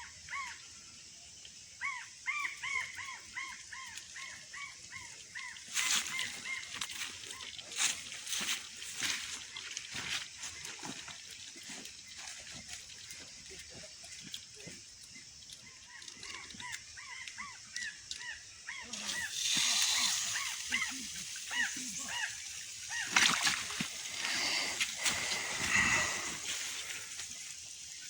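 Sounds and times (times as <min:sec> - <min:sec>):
birds chirping: 0:11.8 - 0:28.0
water spraying hiss: 0:18.9 - 0:28.0.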